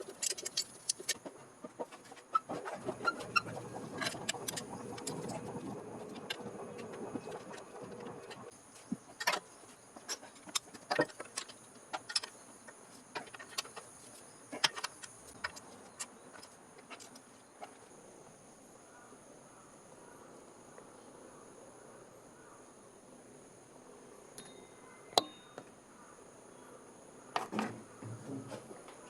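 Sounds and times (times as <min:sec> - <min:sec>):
noisy rumble: 0:02.5 - 0:08.5.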